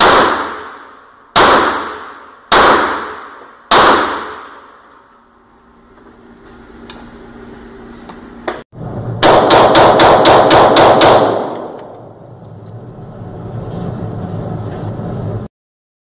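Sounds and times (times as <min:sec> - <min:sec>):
pistol shots: 0:00.0 - 0:04.7, 0:09.2 - 0:12.0.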